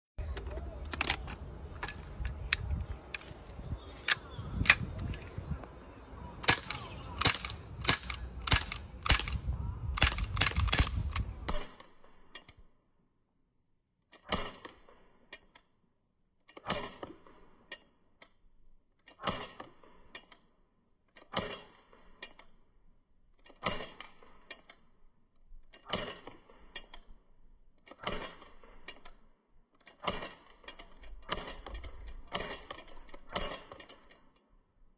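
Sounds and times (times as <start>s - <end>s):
air pistol shots: 6.4s - 11.7s
quick mechanical clicks: 6.4s - 12.6s, 27.8s - 34.4s.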